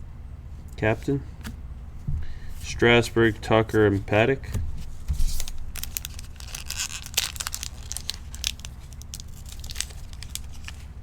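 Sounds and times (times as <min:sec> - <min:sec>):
steady low hum: 0:00.0 - 0:11.0
card pack wrapper crinkling and tearing: 0:05.3 - 0:11.0.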